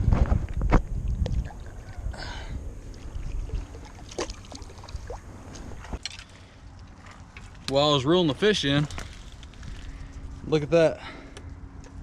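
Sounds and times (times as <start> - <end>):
gentle water sounds: 1.0 - 9.3
water splashing: 1.1 - 6.4.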